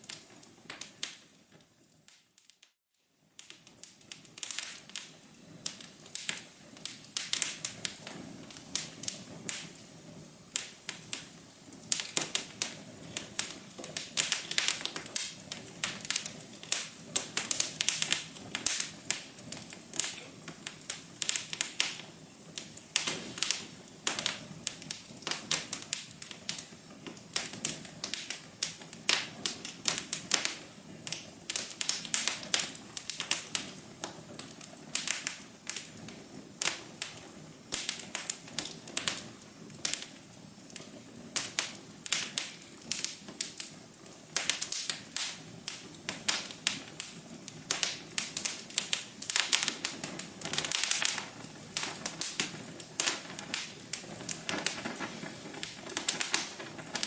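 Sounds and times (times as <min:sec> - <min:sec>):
wood fire crackling: 0:00.0 - 0:57.0.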